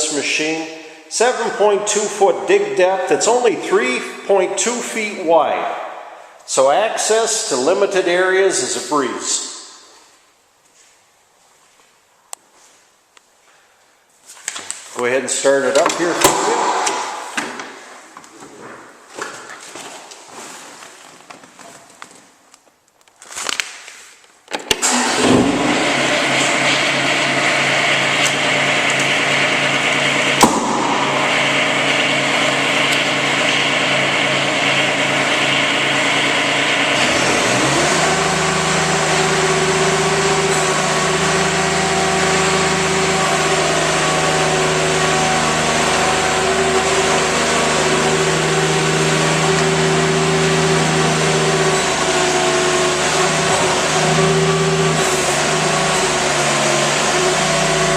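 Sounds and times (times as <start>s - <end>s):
diesel engine running: 24.8s - 57.9s.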